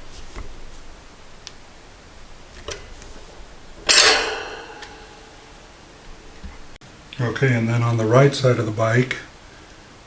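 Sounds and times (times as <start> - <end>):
loud metallic clang: 3.8 - 6.4.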